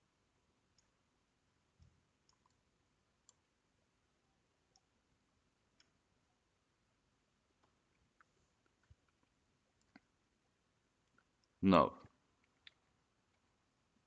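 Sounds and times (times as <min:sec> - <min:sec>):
computer mouse clicks: 0:00.7 - 0:01.0, 0:01.8 - 0:02.6, 0:03.2 - 0:03.4, 0:04.7 - 0:04.9, 0:05.7 - 0:06.0.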